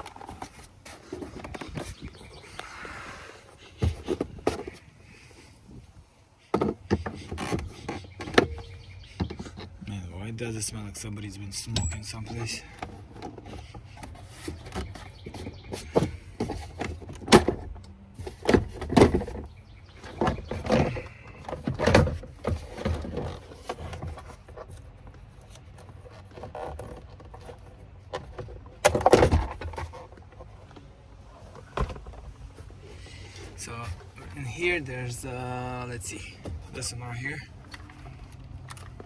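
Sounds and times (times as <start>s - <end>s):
hand tools clattering: 11.7s - 13.7s.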